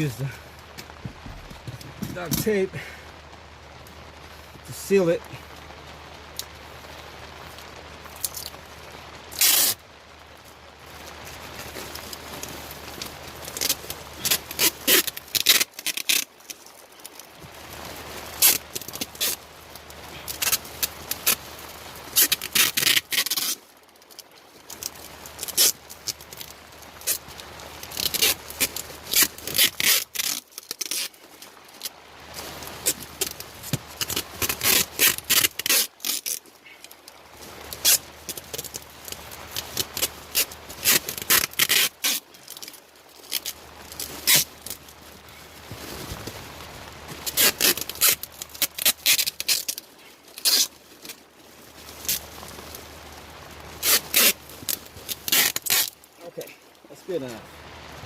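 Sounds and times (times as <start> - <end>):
duct tape ripping off roll: 0.0 - 2.8, 9.3 - 9.8, 11.6 - 17.2, 18.2 - 19.4, 20.1 - 23.7, 24.8 - 36.8, 37.7 - 44.8, 47.1 - 51.2, 53.8 - 56.1
tape rubbing and scraping: 0.0 - 2.8, 9.3 - 9.8, 11.4 - 19.4, 20.2 - 23.8, 24.8 - 36.6, 37.4 - 56.4.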